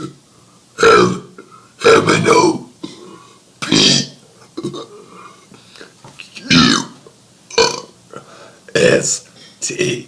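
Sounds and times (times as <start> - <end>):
man burping: 2.8 - 5.2, 6.5 - 8.3.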